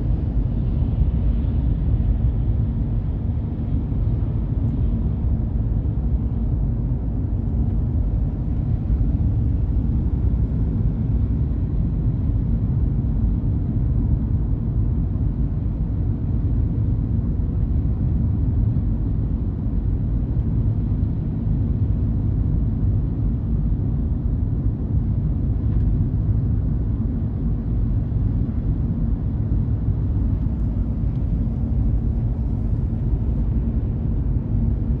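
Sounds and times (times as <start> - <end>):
faint constant hum: 0.0 - 35.0
car driving rumble: 7.0 - 11.0, 28.2 - 35.0.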